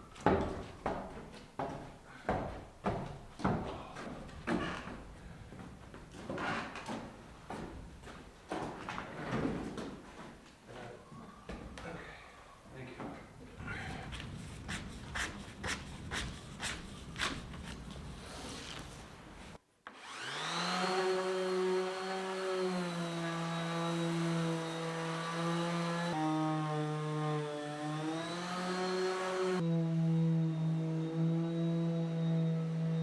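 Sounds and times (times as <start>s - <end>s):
sanding wooden door: 13.6s - 29.6s.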